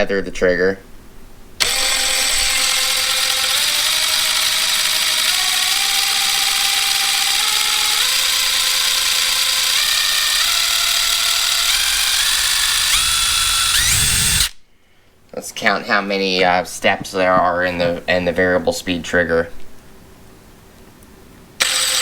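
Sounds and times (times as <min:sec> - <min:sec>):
impact wrench motor whining: 0:01.6 - 0:14.6, 0:21.6 - 0:22.0.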